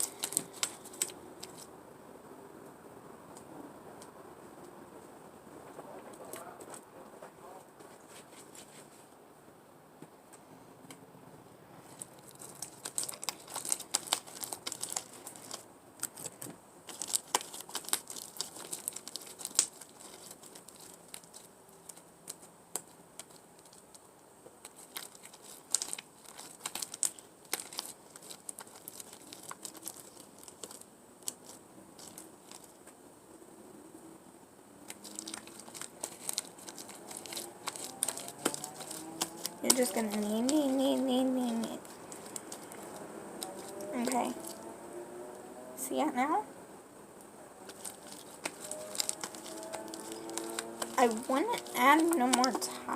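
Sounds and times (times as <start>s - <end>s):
slime squeezed by hand crackling: 0.0s - 1.7s, 11.8s - 24.0s, 24.6s - 32.8s, 34.8s - 44.7s, 47.6s - 52.9s.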